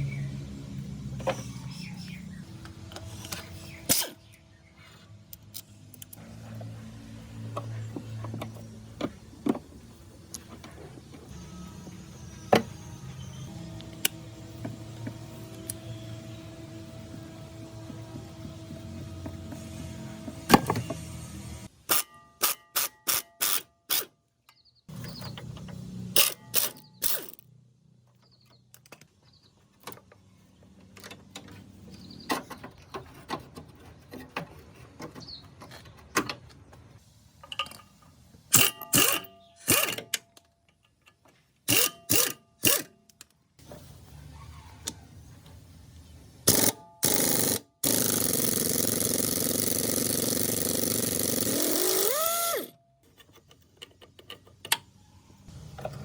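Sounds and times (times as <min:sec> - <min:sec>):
sharp mechanical clicks: 0:21.9 - 0:24.2, 0:26.2 - 0:27.4, 0:38.5 - 0:40.3, 0:41.7 - 0:43.4, 0:46.5 - 0:52.8.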